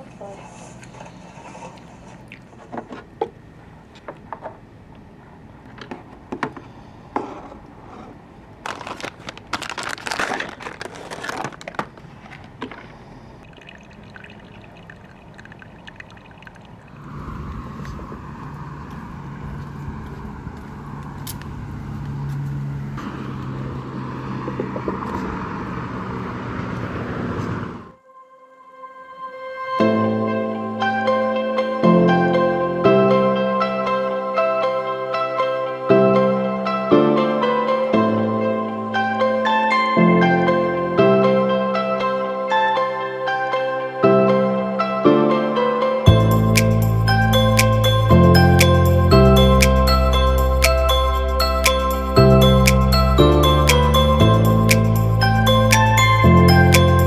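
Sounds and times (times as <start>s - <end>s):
crinkling: 0.0s - 23.3s
low hum: 13.5s - 28.0s, 46.1s - 57.0s
steady rushing noise: 16.9s - 22.0s.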